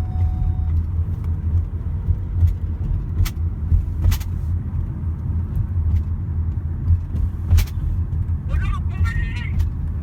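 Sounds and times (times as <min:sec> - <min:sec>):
car interior engine and road noise: 0:00.0 - 0:10.0.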